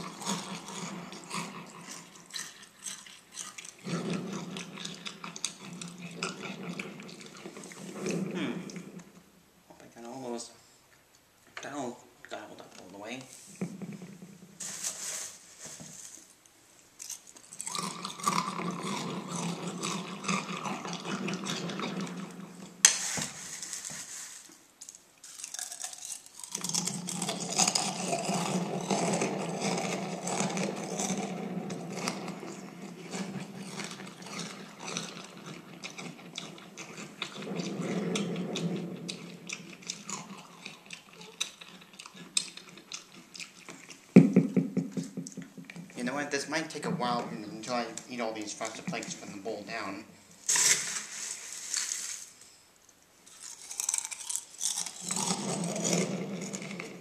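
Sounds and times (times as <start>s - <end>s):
loud cereal crunching: 0.0s - 8.8s, 17.0s - 44.1s, 46.0s - 52.4s, 53.2s - 57.0s.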